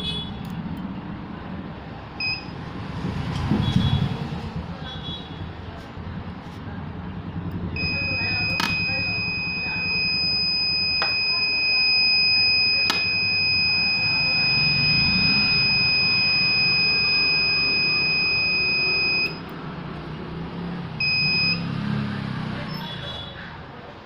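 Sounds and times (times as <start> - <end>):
high-pitched alarm buzzer tone: 7.8 - 19.5, 21.0 - 21.9.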